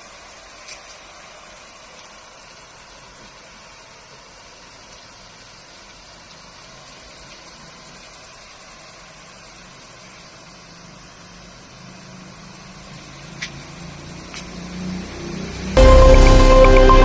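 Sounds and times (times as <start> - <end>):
low hum: 15.8 - 17.0.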